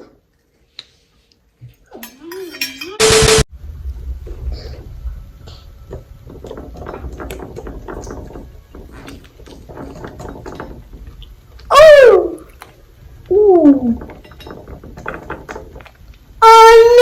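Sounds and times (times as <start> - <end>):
low rumble: 3.5 - 8.5
eating crackles and smacks: 6.4 - 11.7, 12.4 - 13.3, 14.0 - 16.4.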